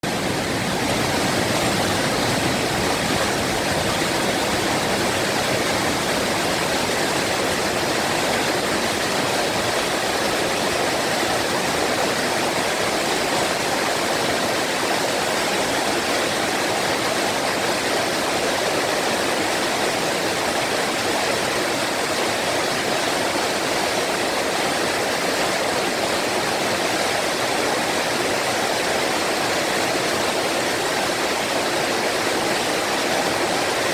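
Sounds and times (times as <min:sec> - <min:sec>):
waterfall splashing and rushing: 0:00.0 - 0:33.9.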